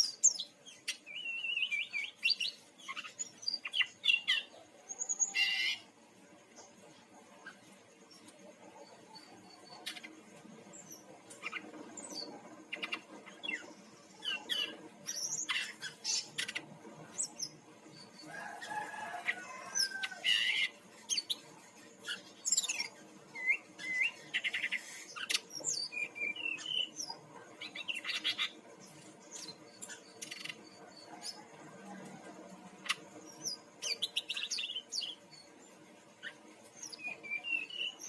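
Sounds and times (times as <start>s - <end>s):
bird singing whistles and trills: 0.0s - 5.8s, 22.1s - 28.6s, 36.2s - 38.0s.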